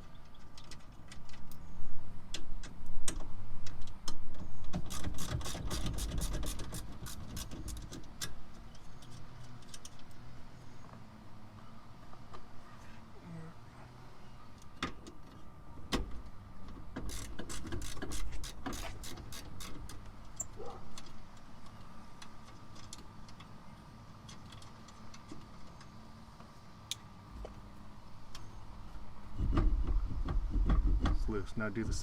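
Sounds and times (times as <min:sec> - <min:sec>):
ratchet clicking: 0:17.1 - 0:20.5.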